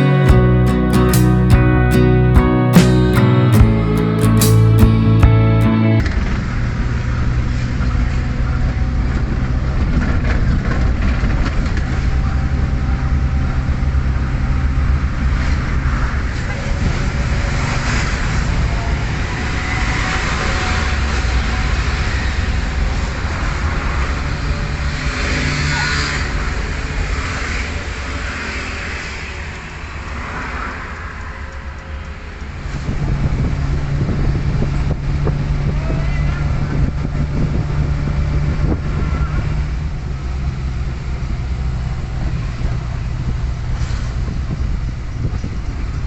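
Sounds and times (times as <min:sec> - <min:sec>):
vehicle engine running: 0:00.0 - 0:06.0
guitar music: 0:00.0 - 0:06.2.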